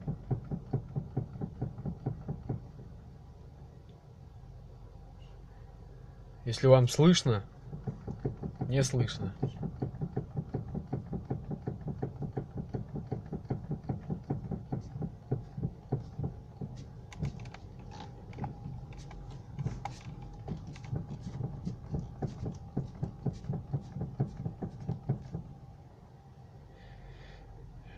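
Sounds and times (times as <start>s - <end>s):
steering rack knocking: 0.0s - 2.9s, 7.7s - 25.5s.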